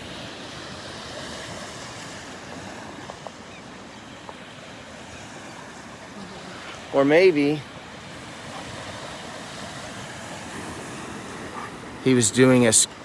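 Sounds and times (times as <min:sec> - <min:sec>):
ocean surf washing on beach: 0:00.0 - 0:13.0.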